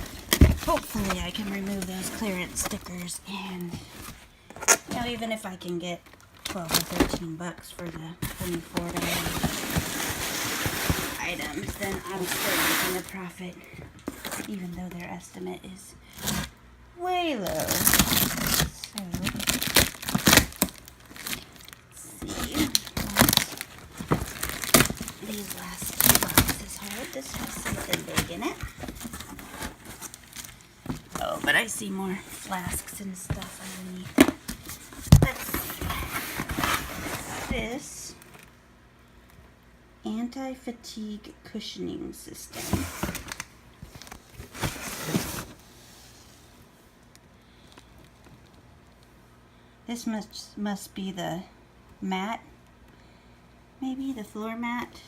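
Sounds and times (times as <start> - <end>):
cardboard boxes being handled: 0.0 - 5.6, 6.4 - 14.9, 17.4 - 38.4, 42.6 - 45.7.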